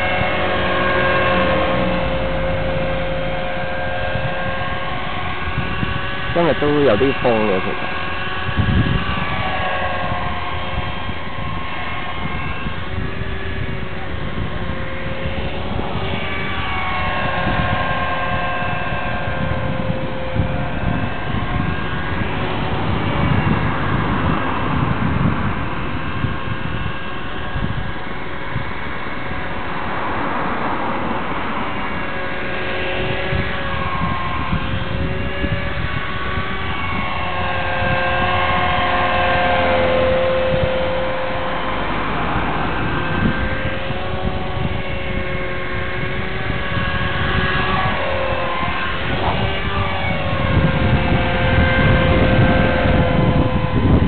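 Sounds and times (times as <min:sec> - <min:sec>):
model helicopter whine: 0:00.0 - 0:54.0
wind on microphone: 0:00.0 - 0:54.0.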